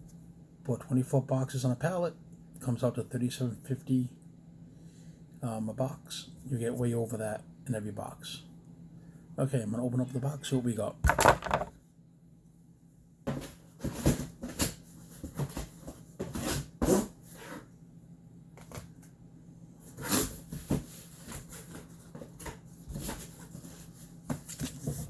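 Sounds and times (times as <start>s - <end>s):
cardboard rustling and scraping: 19.8s - 25.0s.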